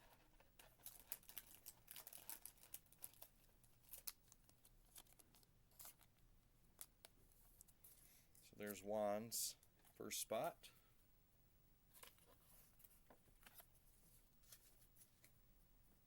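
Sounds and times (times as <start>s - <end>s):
trading cards and wrappers rustling: 0.1s - 10.5s, 11.9s - 15.3s.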